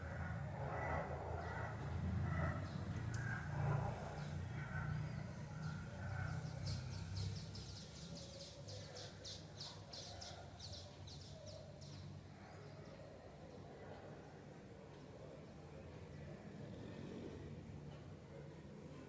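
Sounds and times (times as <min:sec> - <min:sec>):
bird chirping: 0:04.2 - 0:12.7.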